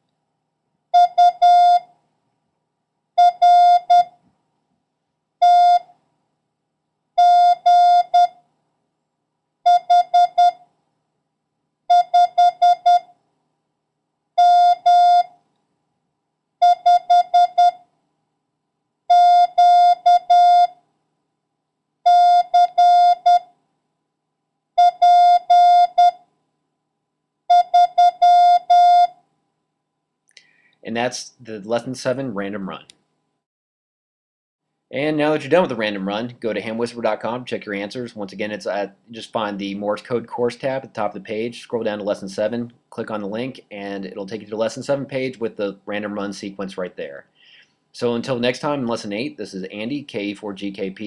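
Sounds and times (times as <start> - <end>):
morse code beeps: 1.0 - 1.9, 3.2 - 4.2, 5.4 - 5.9, 7.2 - 8.4, 9.7 - 10.6, 11.9 - 13.1, 14.4 - 15.3, 16.6 - 17.8, 19.1 - 20.8, 22.1 - 23.5, 24.8 - 26.2, 27.5 - 29.1.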